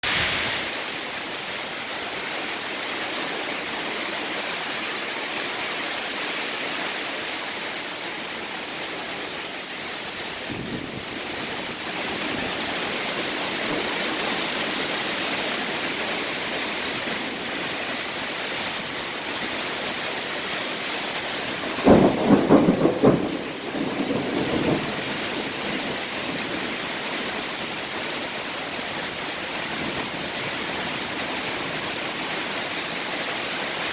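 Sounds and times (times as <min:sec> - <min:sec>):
loud burst: 0:00.0 - 0:01.5
steady rain falling: 0:00.0 - 0:33.9.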